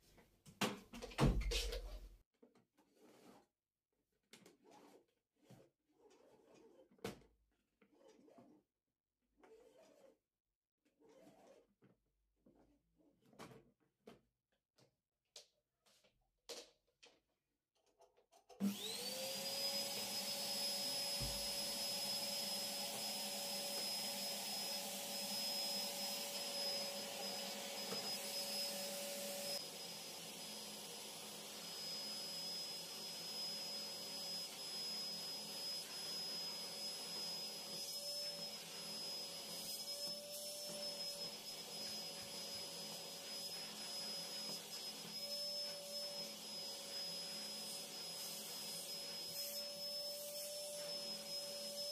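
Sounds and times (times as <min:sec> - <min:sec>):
vacuum cleaner motor whine: 0:18.6 - 0:51.9.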